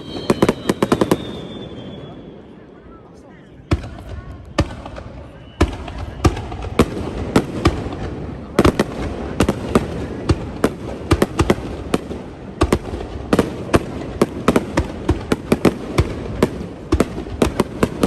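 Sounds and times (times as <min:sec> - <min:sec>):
fireworks bursting: 0:00.0 - 0:02.6, 0:03.7 - 0:18.0
fireworks rumble and crackle: 0:00.0 - 0:18.0.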